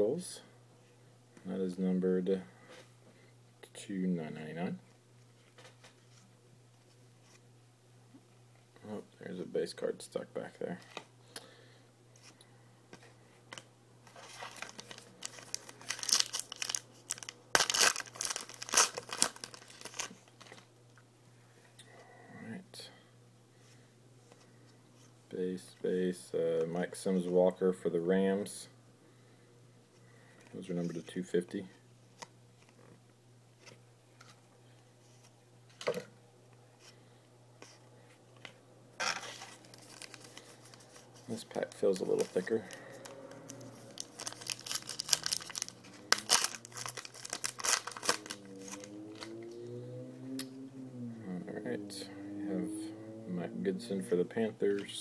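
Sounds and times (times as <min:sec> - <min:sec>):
steady low hum: 0:00.0 - 0:55.0
card pack wrapper crinkling: 0:13.5 - 0:20.6, 0:39.0 - 0:49.3.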